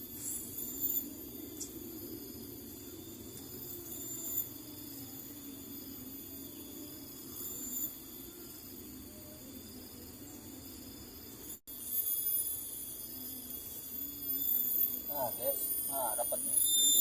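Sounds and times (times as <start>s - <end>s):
insects shrilling: 0.0s - 17.0s.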